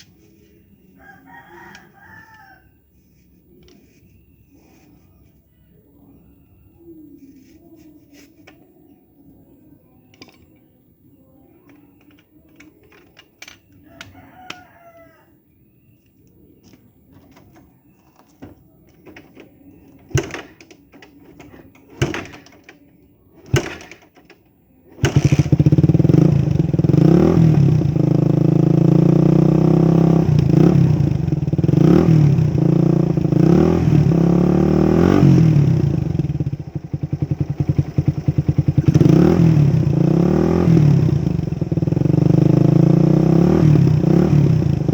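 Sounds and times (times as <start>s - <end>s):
rooster crowing faintly: 0.0s - 20.1s
motorcycle engine revving: 20.0s - 22.5s, 23.4s - 24.2s, 24.9s - 44.9s.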